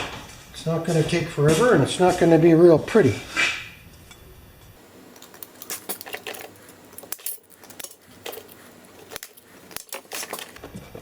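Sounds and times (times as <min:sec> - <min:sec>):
metal plates clinking: 0:04.8 - 0:10.6.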